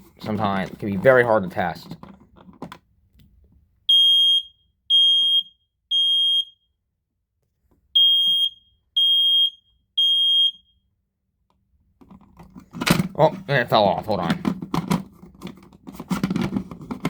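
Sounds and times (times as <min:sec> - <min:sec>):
smoke alarm beeps: 0:03.9 - 0:06.8, 0:08.0 - 0:10.8.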